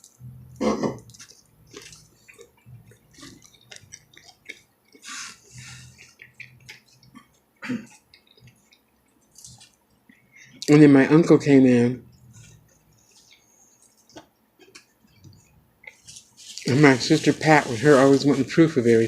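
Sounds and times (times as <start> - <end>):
wet mouth smacking: 0.0 - 9.8, 12.2 - 16.2
person chewing food: 0.0 - 10.8, 12.0 - 17.5.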